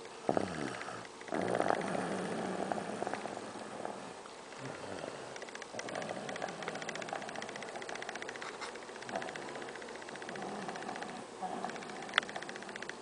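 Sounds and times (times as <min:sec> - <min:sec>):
boy snoring: 0:00.2 - 0:07.6, 0:10.3 - 0:12.7.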